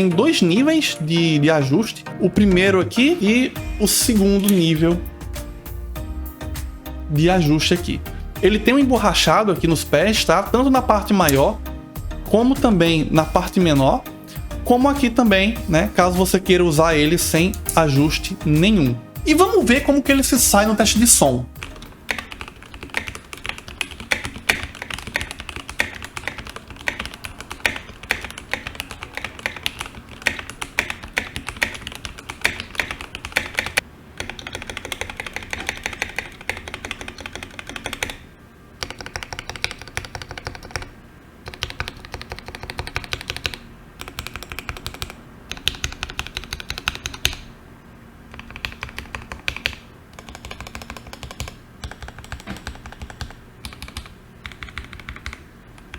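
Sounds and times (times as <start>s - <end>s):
mechanical keyboard typing: 7.7s - 11.6s, 19.3s - 38.2s, 38.8s - 47.5s, 48.3s - 55.9s.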